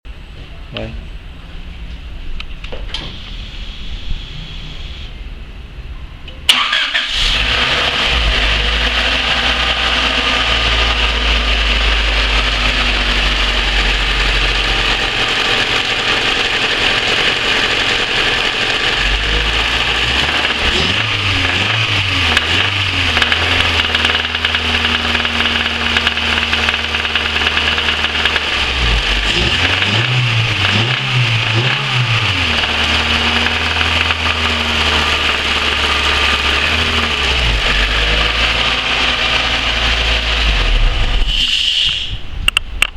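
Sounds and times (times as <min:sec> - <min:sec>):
car engine starting and idling: 0:06.4 - 0:41.4
strange engine knocking noise: 0:09.2 - 0:40.3.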